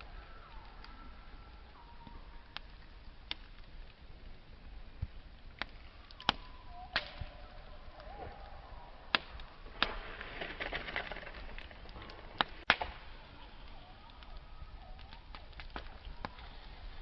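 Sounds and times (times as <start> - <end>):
campfire crackling and popping: 0.0 - 17.0
faint thin whistling tone: 5.9 - 9.6.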